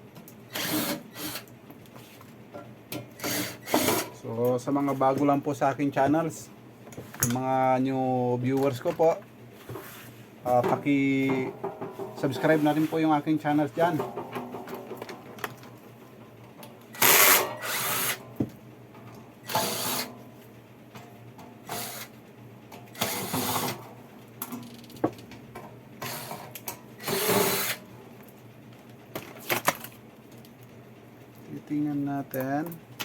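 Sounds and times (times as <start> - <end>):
power driver running in bursts: 16.9 - 18.2, 19.4 - 20.1, 22.9 - 23.8, 27.0 - 27.9.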